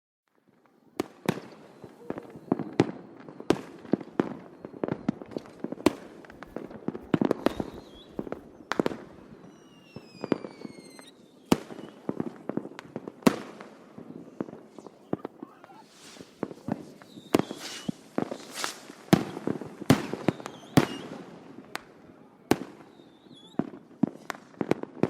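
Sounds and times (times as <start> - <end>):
distant fireworks bangs and pops: 0.6 - 14.8, 16.4 - 21.8, 22.5 - 25.0
falling whistle: 6.3 - 12.1.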